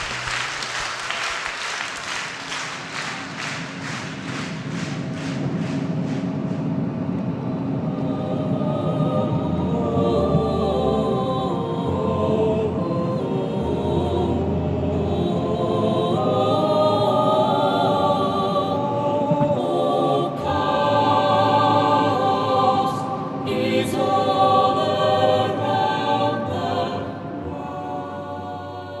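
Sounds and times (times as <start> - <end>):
choir-like held chords: 7.0 - 29.0.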